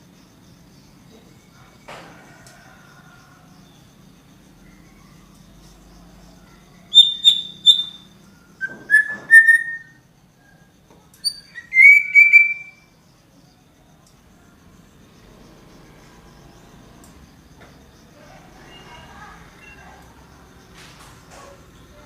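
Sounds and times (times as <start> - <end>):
songbird whistling: 6.9 - 10.0, 11.2 - 12.9.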